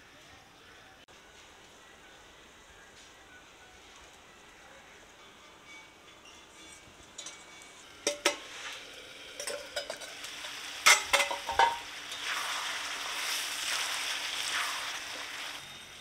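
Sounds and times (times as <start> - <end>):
chicken sizzling in a pan: 7.6 - 16.0.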